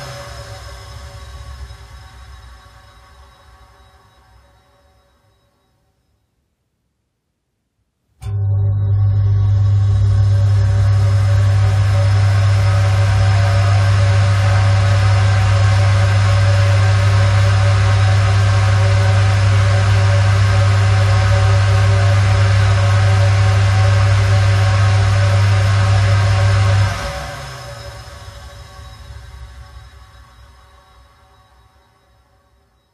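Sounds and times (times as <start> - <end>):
faint steady tones: 0.0 - 6.8, 8.2 - 32.9
ventilation fan humming: 10.0 - 31.3.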